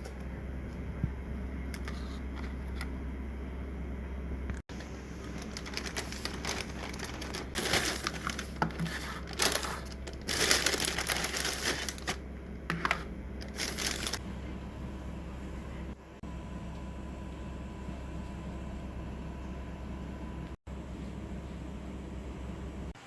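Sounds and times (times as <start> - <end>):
packaging crinkling and rustling: 4.7 - 14.2.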